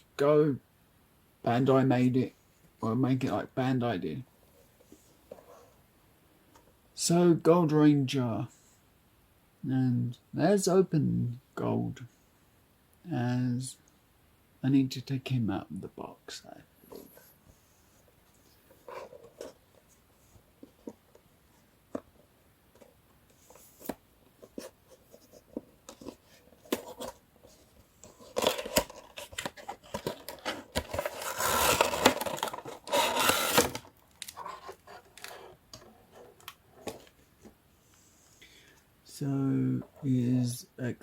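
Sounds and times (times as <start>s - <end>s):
packaging tearing and rustling: 28.0s - 35.5s.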